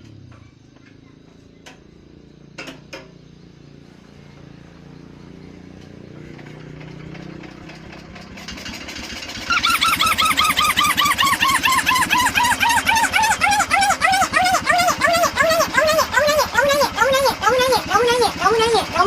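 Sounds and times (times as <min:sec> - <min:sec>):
forklift engine humming: 0:03.9 - 0:19.0
high pulsing squeal: 0:09.5 - 0:19.0.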